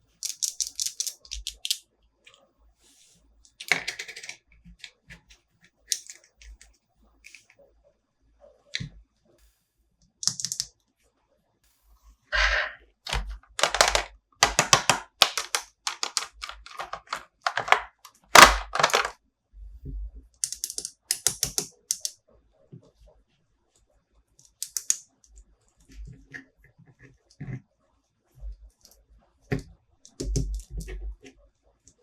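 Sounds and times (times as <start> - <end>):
toy packaging clicking and crinkling: 0.2 - 1.8, 5.9 - 6.7, 7.3 - 7.5, 13.1 - 19.2, 20.4 - 22.1, 24.5 - 25.0.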